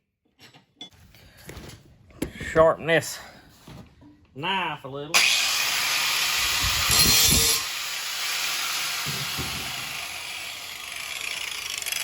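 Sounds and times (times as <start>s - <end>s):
power grinder sharpening knife: 5.2s - 9.4s, 10.2s - 12.0s.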